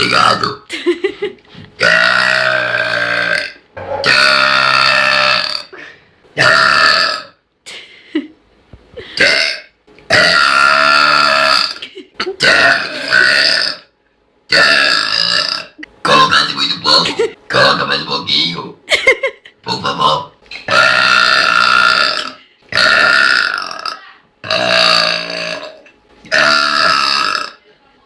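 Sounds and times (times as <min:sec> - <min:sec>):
person burping loudly: 0:01.8 - 0:05.8, 0:06.4 - 0:07.4, 0:09.2 - 0:13.9, 0:14.5 - 0:18.1, 0:19.6 - 0:27.6.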